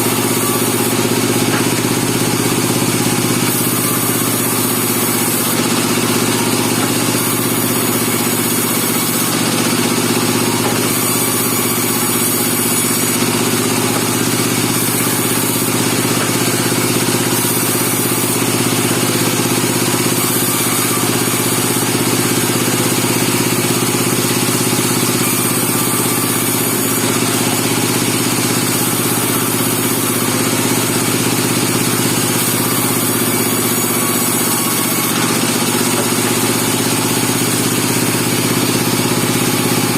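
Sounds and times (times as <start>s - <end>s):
engine-driven band sawmill running: 0.0s - 39.9s.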